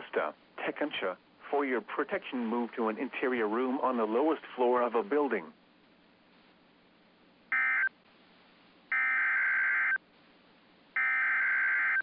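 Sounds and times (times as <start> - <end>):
two-tone digital modem warble: 11.0 - 12.0.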